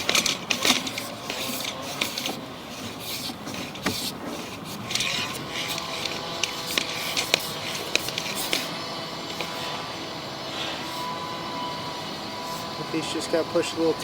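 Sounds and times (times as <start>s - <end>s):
cable rubbing and scraping: 0.0s - 14.0s.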